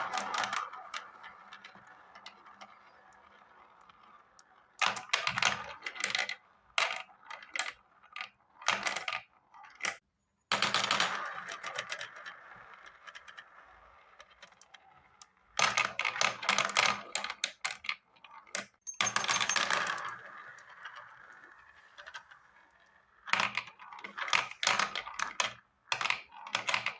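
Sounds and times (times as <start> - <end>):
marbles clattering down a run: 18.9 - 26.7.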